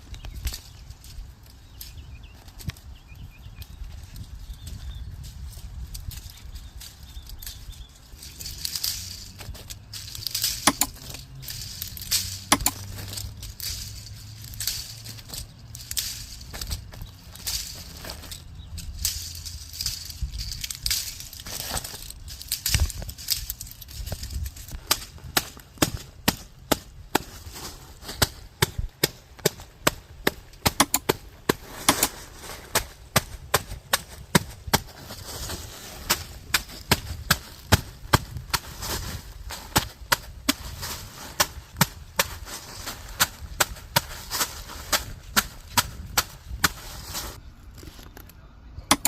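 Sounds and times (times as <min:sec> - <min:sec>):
pea pods snapping: 0:00.0 - 0:46.9.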